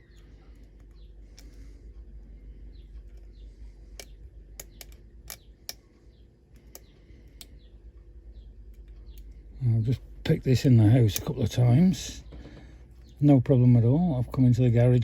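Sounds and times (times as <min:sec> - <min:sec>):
faint bird chirps: 0:00.0 - 0:10.0
lock pick clicking: 0:04.0 - 0:05.8.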